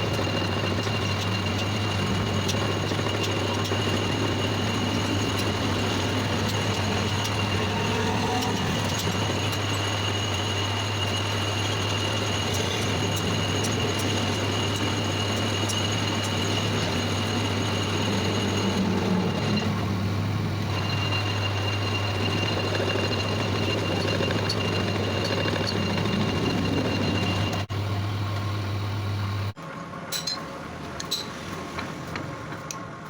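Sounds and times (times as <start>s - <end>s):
lathe motor hum: 0.0s - 28.8s
high steady whine: 0.0s - 29.6s.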